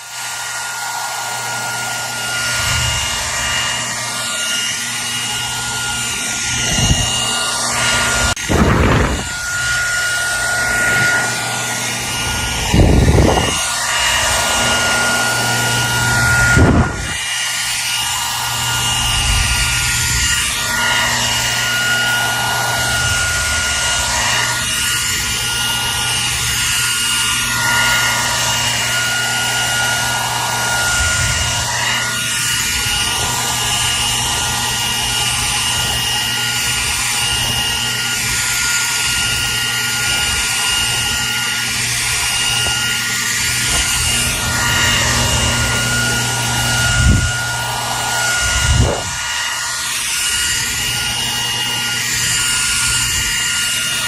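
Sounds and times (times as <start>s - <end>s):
hair dryer running: 0.0s - 54.0s.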